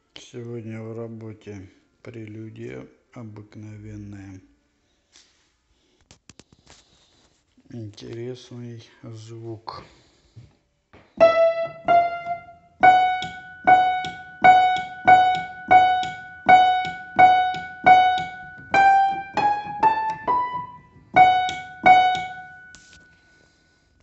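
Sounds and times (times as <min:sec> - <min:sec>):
upright piano notes: 0:11.2 - 0:22.8.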